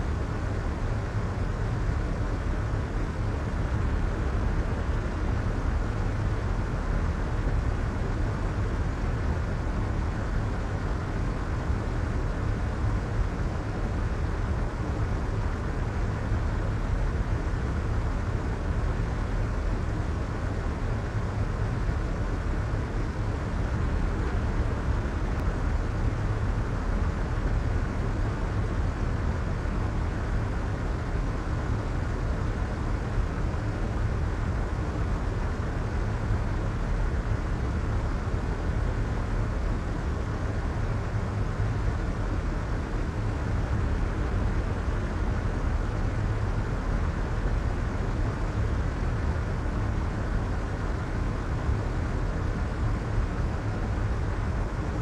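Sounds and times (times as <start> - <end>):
white noise hiss: 0.0 - 55.0.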